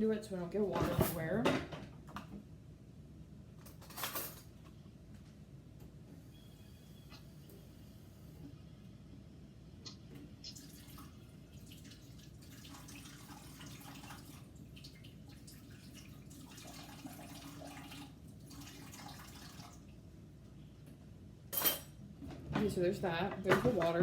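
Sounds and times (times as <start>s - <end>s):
faucet running faintly: 9.9s - 20.0s.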